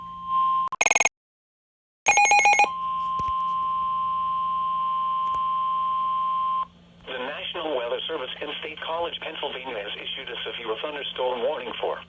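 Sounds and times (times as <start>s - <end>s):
screechy digital bursts: 0.8s - 1.1s
two-tone attention signal: 0.8s - 1.1s, 2.1s - 2.7s.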